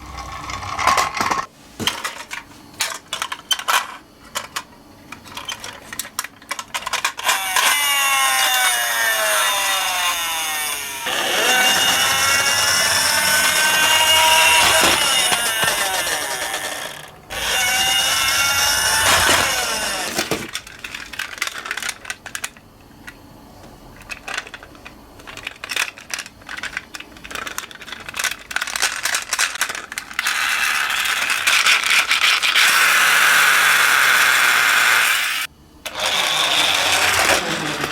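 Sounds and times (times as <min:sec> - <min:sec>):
toy cars clattering down a slope: 0:00.0 - 0:04.7, 0:05.3 - 0:22.6, 0:24.0 - 0:37.9
toy electronic siren wailing: 0:07.3 - 0:20.1.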